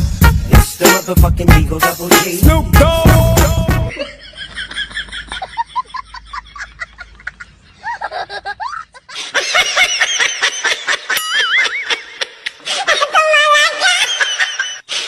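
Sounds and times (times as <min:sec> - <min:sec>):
person laughing: 0:03.8 - 0:15.0.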